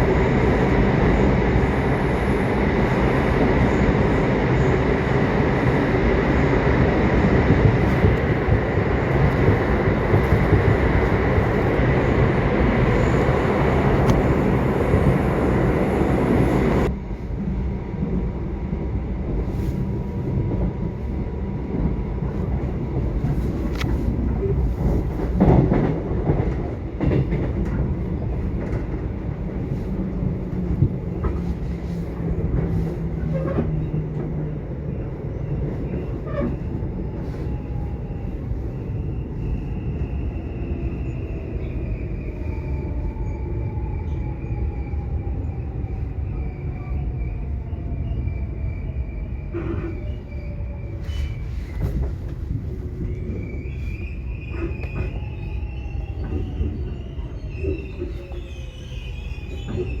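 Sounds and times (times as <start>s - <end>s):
subway train rumbling on rails: 0.0s - 60.0s
clicks and knocks of train: 6.8s - 17.0s, 19.2s - 37.5s, 49.4s - 50.3s, 51.0s - 60.0s.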